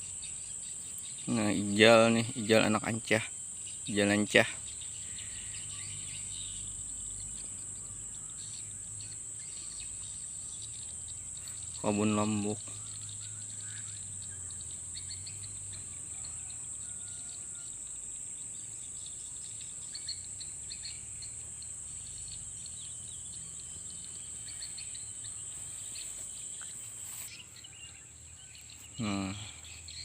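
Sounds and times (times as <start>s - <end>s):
bird chirps: 0.0s - 30.0s
insects droning: 0.0s - 30.0s
person speaking: 29.0s - 29.6s.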